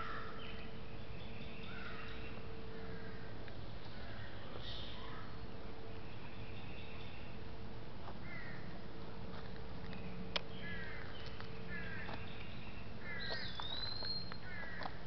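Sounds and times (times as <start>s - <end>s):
birds chirping: 0.0s - 15.0s
steady low hum: 0.0s - 15.0s
bird whistle: 13.3s - 14.3s.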